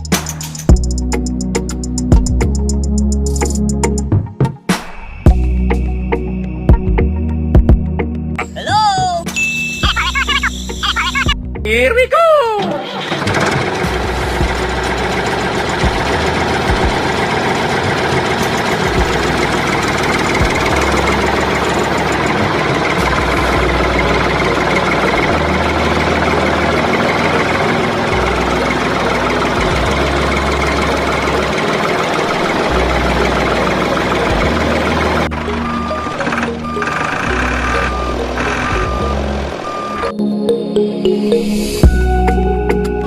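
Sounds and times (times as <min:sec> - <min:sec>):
tractor engine running: 0:00.0 - 0:04.1, 0:09.4 - 0:11.6, 0:12.6 - 0:40.2.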